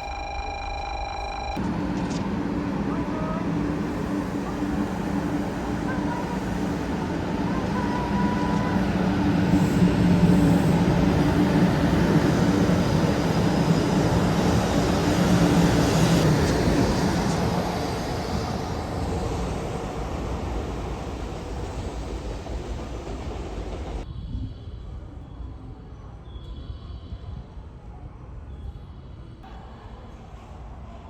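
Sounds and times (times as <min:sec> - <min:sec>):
bullet train rushing past: 0:00.0 - 0:24.1.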